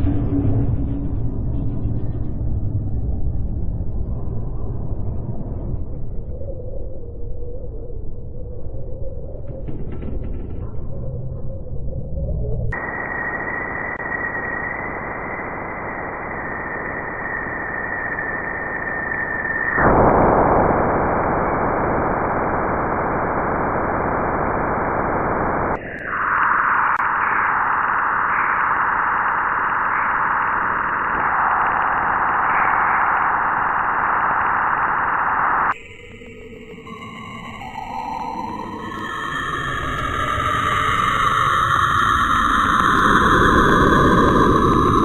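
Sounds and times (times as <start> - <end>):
static-like noise: 12.8 - 35.8.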